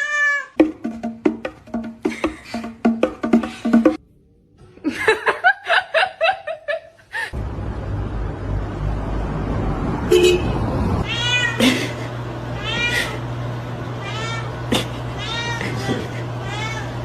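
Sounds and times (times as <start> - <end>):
cat meowing: 0.0 - 0.6, 11.0 - 11.6, 12.6 - 13.2, 14.0 - 14.6, 15.2 - 17.0.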